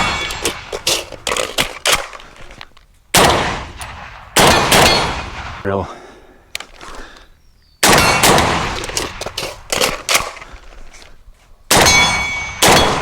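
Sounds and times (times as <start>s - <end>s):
suppressed rifle shots: 3.1s - 5.6s, 7.8s - 10.4s, 11.7s - 13.0s
metallic ringing: 11.8s - 13.0s.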